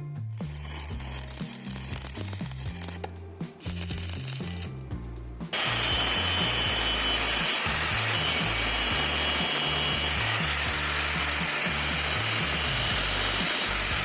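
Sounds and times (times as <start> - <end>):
background music with bassline: 0.0 - 14.0
power tool whining on metal: 5.5 - 14.0.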